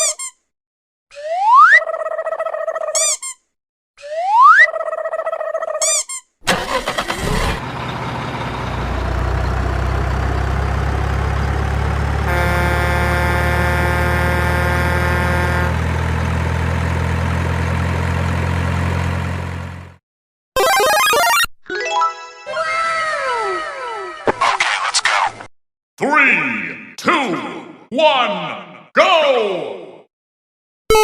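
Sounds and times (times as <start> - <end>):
cartoon whistle slides: 0.0 - 0.4, 1.2 - 1.9
engine cranking and idling: 6.4 - 12.7, 15.7 - 20.0
horn: 12.3 - 15.7.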